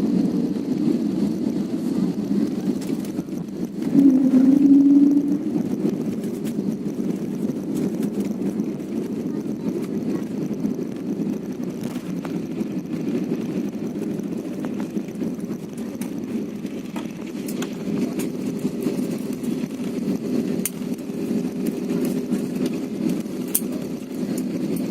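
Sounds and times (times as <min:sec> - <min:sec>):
airliner engines rumbling: 0:00.0 - 0:24.9
faint hum: 0:02.6 - 0:07.0.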